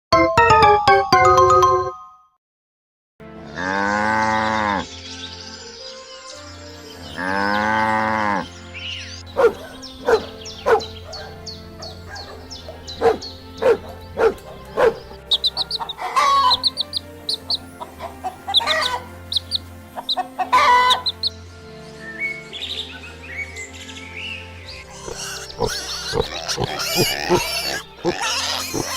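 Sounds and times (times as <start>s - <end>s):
background music: 0.1s - 2.3s, 3.2s - 28.9s
chickens clucking: 9.4s - 21.3s
long drawn-out animal calls: 12.1s - 21.2s, 24.9s - 28.9s.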